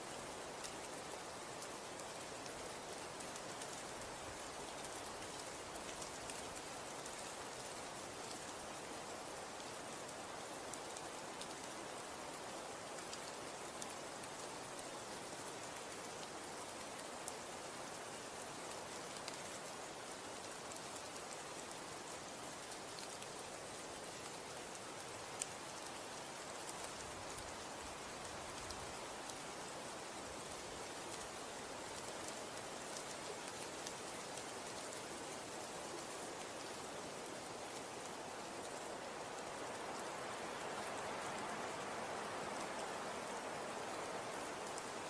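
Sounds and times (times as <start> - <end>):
snow falling soft hiss: 0.0 - 45.0.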